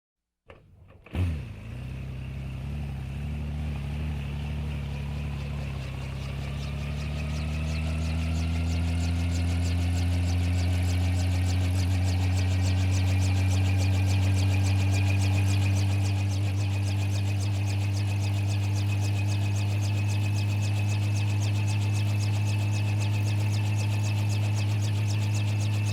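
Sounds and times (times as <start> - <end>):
helicopter engine starting up: 0.5 - 25.9
fast even rotor beat: 3.6 - 25.9.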